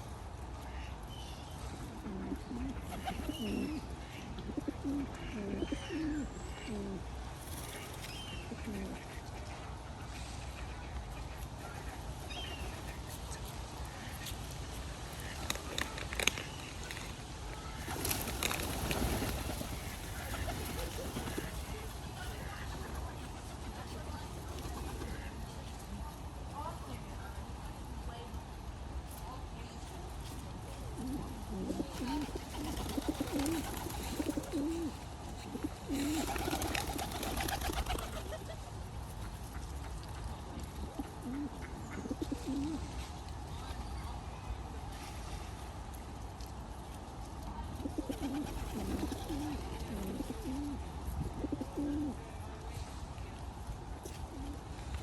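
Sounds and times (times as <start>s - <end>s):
outdoor background noise: 0.0s - 55.0s
pigeons cooing: 1.7s - 9.3s, 17.8s - 23.6s, 30.9s - 38.6s, 40.7s - 42.9s, 47.8s - 52.2s.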